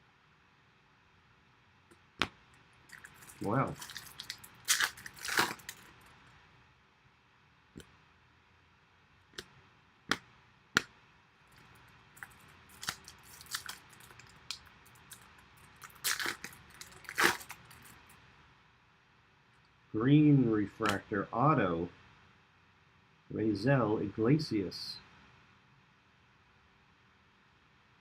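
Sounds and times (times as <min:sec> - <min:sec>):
trading cards clicking and rustling: 0:01.9 - 0:06.0, 0:11.6 - 0:18.0.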